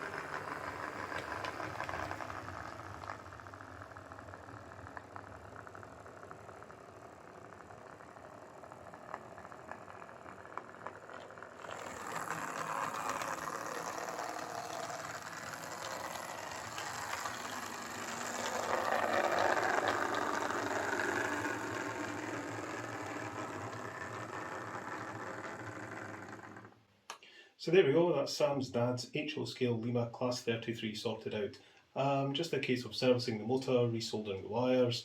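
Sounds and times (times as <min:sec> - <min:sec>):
clicking wheels on track: 0:00.0 - 0:26.8
model train motor whirring: 0:00.0 - 0:26.8.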